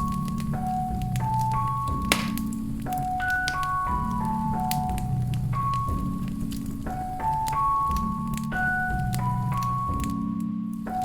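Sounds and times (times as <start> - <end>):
gentle melody over drone: 0.0 - 11.0
wood fire crackling: 0.0 - 11.0.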